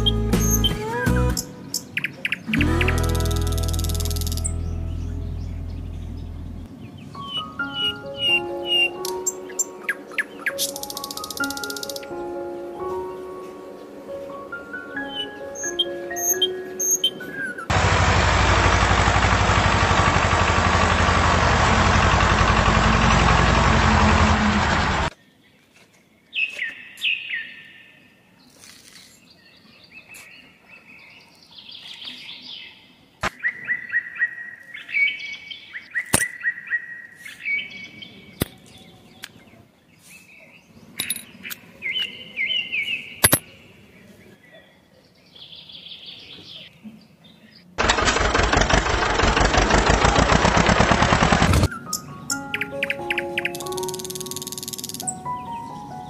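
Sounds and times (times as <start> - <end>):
small birds chirping: 0.0 - 12.3, 12.9 - 17.7, 25.1 - 47.8, 51.6 - 56.0
background music: 0.0 - 17.7, 51.7 - 56.0.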